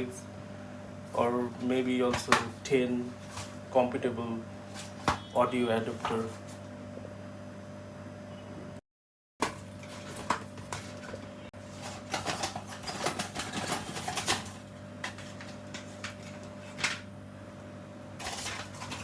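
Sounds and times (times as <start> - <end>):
steady low hum: 0.0 - 8.8
packaging rustling and clicking: 9.4 - 17.1, 18.2 - 19.0.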